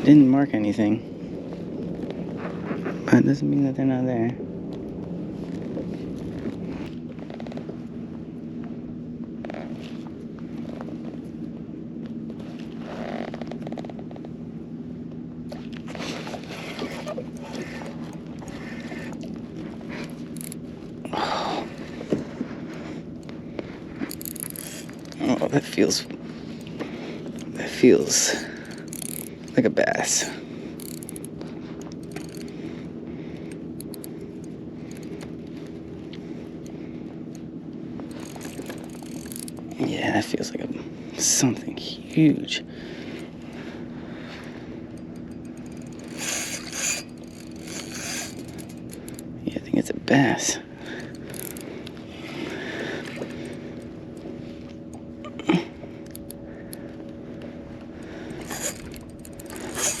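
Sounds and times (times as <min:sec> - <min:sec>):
steady low hum: 0:00.0 - 1:00.0
small scraping ticks: 0:12.0 - 0:14.4, 0:15.5 - 0:21.1, 0:21.7 - 0:39.9, 0:43.1 - 0:49.3, 0:50.8 - 0:55.0, 0:56.0 - 1:00.0
fishing reel whirring: 0:15.9 - 0:22.1, 0:22.7 - 0:37.4, 0:38.0 - 0:40.5, 0:43.0 - 0:49.5, 0:50.1 - 0:54.4, 0:57.9 - 1:00.0.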